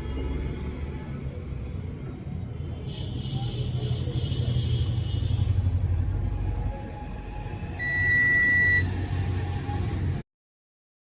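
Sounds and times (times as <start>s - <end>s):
washing machine electronic beep: 7.8s - 9.0s.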